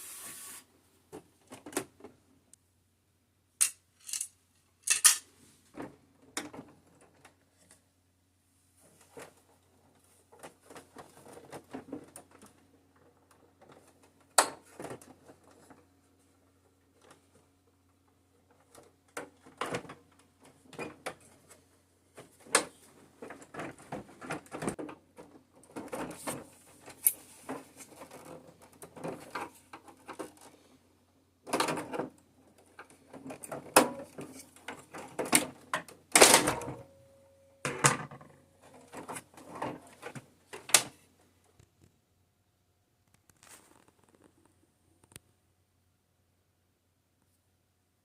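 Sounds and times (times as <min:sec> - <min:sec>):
plastic and metal parts rattling: 0:03.6 - 0:05.2, 0:09.0 - 0:15.8, 0:22.2 - 0:30.6.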